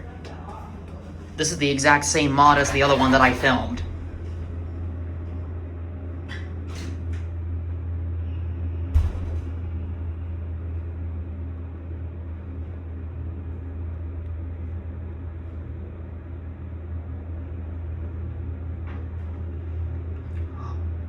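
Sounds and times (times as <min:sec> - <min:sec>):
elevator low hum: 0:00.0 - 0:21.0.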